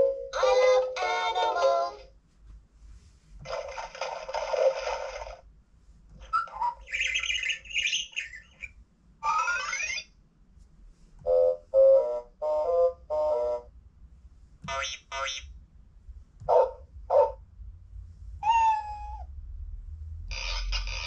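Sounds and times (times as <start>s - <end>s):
bird-like chirping calls: 6.2s - 8.7s
toy speaker noisy burst: 20.3s - 21.0s.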